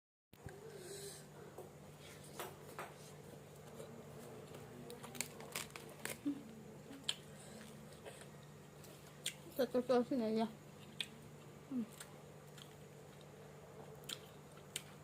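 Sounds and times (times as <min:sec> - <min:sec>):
steady low hum: 0:00.4 - 0:15.0
person chewing food: 0:06.9 - 0:09.4, 0:10.8 - 0:15.0.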